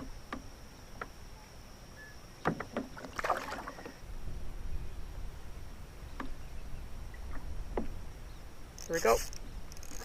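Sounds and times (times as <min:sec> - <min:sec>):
knocks and clatter on kayak: 0:02.4 - 0:03.2, 0:07.2 - 0:08.0.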